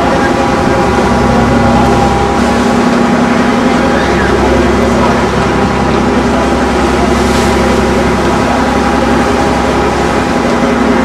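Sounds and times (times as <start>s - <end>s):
ferry engine droning: 0.0s - 11.0s.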